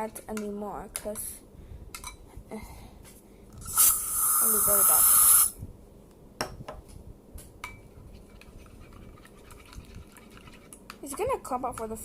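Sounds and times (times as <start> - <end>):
aerosol spray hiss: 3.6 - 5.6
utensil clinking and scraping bowl: 7.7 - 12.0.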